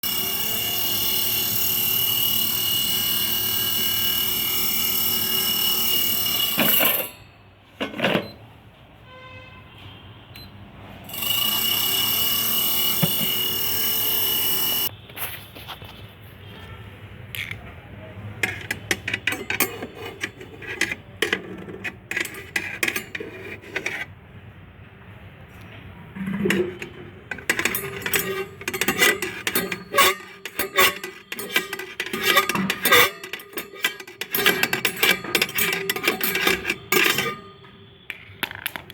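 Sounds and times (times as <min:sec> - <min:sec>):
air fryer fan whining: 0:18.4 - 0:24.1, 0:26.1 - 0:37.8
sharp clicks and knocks: 0:26.2 - 0:38.9.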